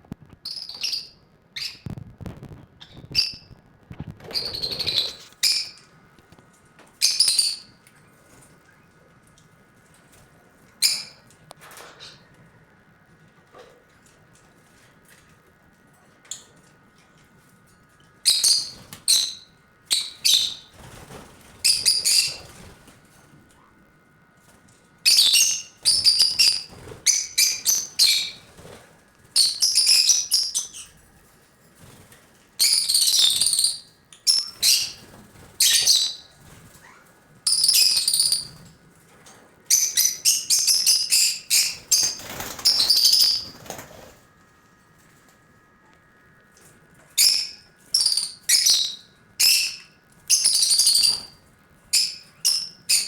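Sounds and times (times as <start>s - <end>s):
lovebirds chirping shrilly: 4.3s - 5.8s, 29.4s - 31.0s, 32.6s - 36.3s, 39.7s - 43.8s.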